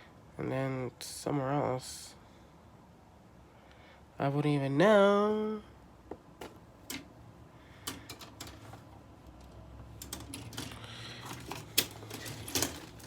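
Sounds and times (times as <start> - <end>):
plastic parts clicking: 7.8 - 13.0
plastic bags rustling: 8.1 - 13.0.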